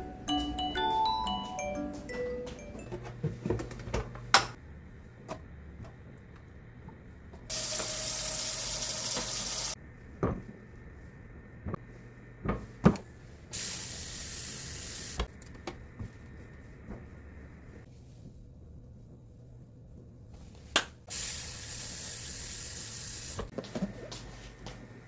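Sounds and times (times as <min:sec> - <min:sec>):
kitchen tap running: 0:07.5 - 0:09.8, 0:13.6 - 0:15.3, 0:21.1 - 0:23.5.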